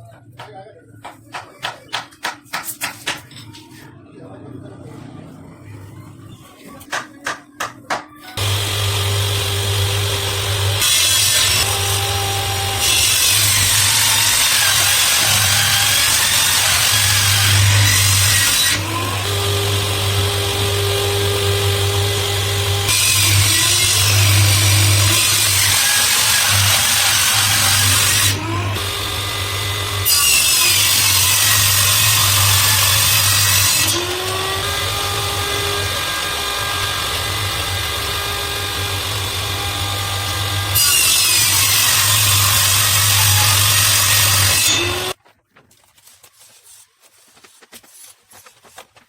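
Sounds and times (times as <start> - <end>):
power tool cutting wood: 8.4 - 45.2.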